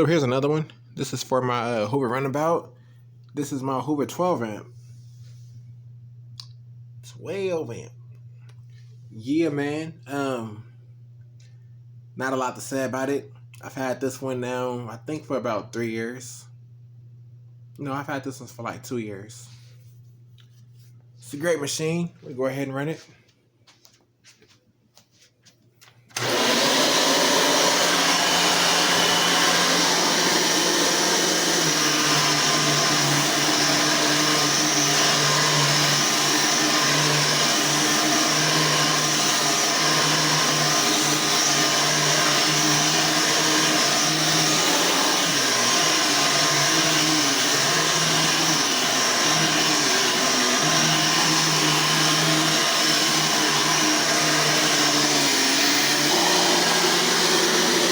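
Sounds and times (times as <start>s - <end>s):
vacuum cleaner running: 26.1s - 57.9s.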